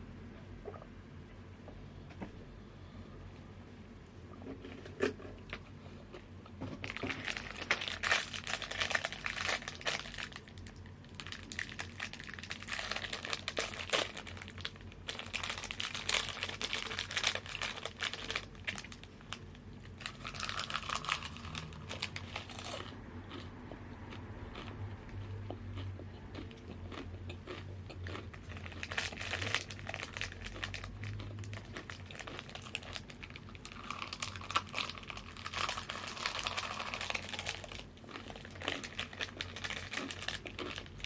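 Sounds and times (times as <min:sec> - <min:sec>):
plastic bag crinkling: 0:06.8 - 0:22.9, 0:28.5 - 0:41.0.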